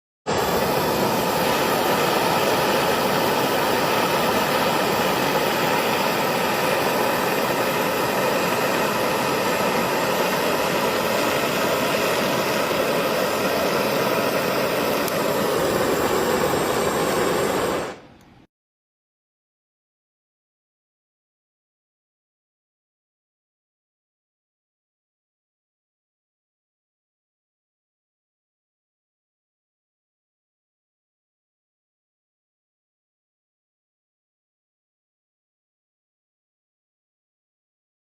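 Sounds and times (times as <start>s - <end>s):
loud steady rushing noise: 0.3s - 18.1s.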